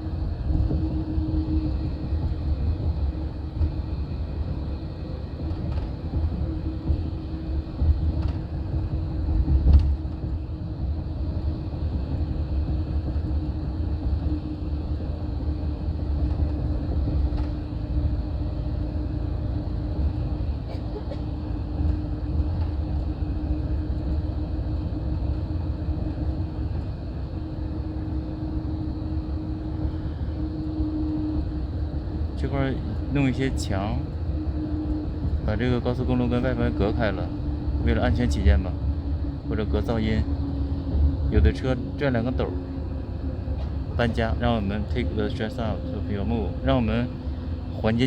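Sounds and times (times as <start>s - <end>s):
coach engine and road rumble: 0.0s - 48.0s
drone-like hum: 0.0s - 48.0s.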